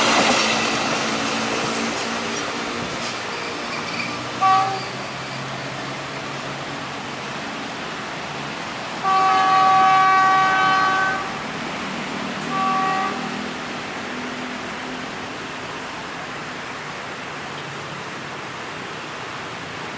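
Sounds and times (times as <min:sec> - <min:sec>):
train rumbling on tracks: 0:00.0 - 0:19.9
train horn chord: 0:04.4 - 0:05.0, 0:09.0 - 0:11.4, 0:12.4 - 0:13.6.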